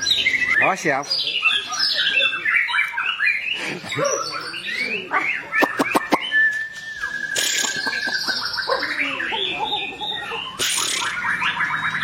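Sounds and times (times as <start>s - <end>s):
bird singing whistled glides: 0.0s - 12.0s
long steady bird whistle: 5.4s - 9.8s
bird sharp clicks: 5.6s - 6.3s, 7.3s - 8.5s.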